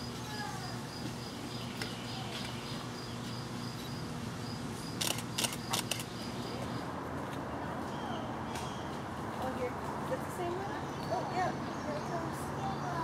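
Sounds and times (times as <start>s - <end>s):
insects chirping: 0.0s - 7.0s
sharp clicks: 5.0s - 6.1s.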